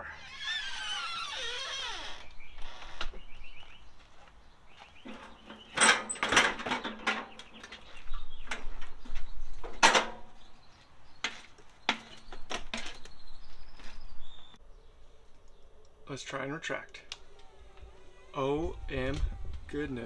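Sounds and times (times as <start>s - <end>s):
hard objects clacking and rattling: 5.1s - 10.3s.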